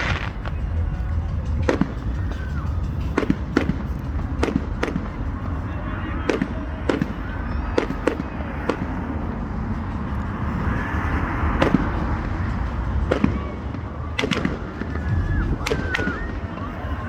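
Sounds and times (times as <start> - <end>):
firework bangs: 0.0 - 9.5, 13.0 - 17.0
firework crackling: 0.0 - 17.0
steady rumble: 0.0 - 17.0.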